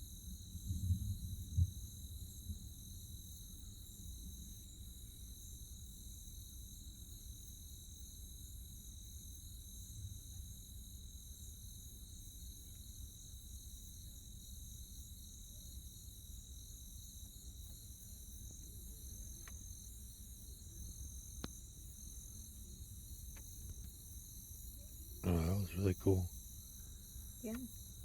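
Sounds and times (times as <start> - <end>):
crickets trilling: 0.0 - 28.0
low background hum: 18.6 - 28.0.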